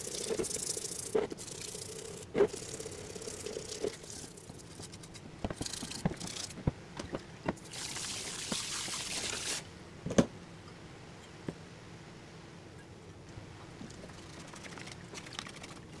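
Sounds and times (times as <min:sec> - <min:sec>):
steady hiss: 0:00.0 - 0:06.7.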